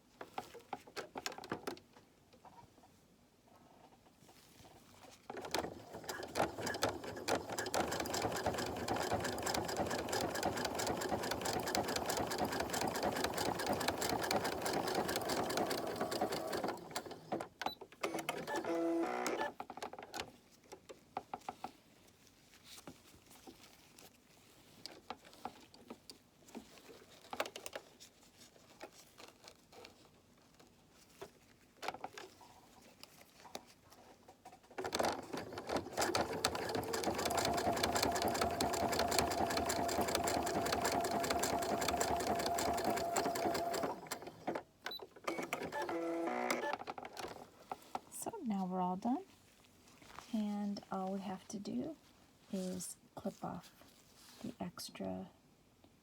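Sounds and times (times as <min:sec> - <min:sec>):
sewing machine running: 0:05.5 - 0:17.2, 0:35.0 - 0:44.5.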